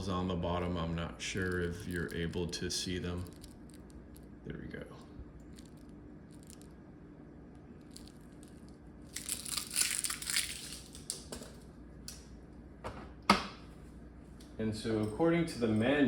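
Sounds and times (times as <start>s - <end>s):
plastic packaging crinkling: 1.2s - 4.4s, 5.4s - 6.8s, 7.8s - 11.3s.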